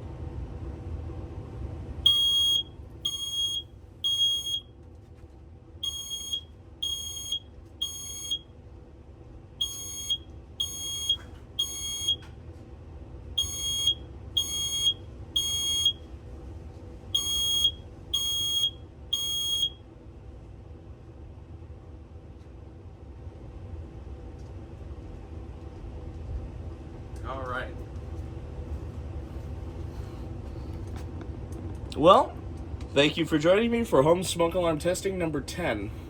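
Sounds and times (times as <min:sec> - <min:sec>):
smoke alarm beeping: 0:02.0 - 0:04.7, 0:05.8 - 0:08.5, 0:09.6 - 0:12.3, 0:13.4 - 0:16.0, 0:17.2 - 0:19.8.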